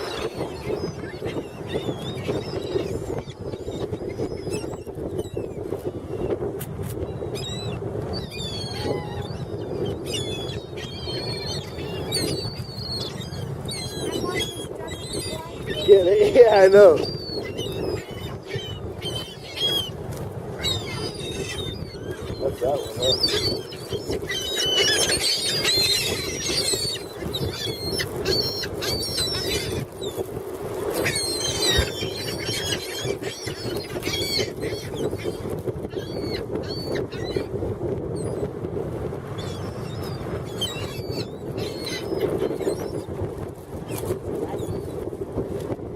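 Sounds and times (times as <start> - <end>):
seagulls calling: 0.0 - 6.2, 7.2 - 30.2, 30.9 - 37.6, 39.4 - 43.1.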